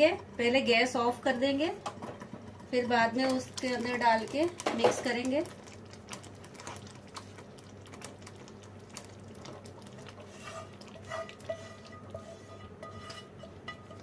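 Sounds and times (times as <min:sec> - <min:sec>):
spoon scraping metal pan: 0:10.1 - 0:14.0.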